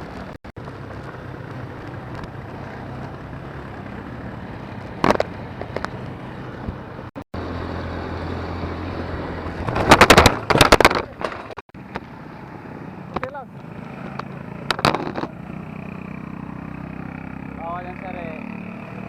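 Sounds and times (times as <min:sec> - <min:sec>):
atv engine running: 0:00.0 - 0:19.0
loud knocks and rattles: 0:09.6 - 0:11.6.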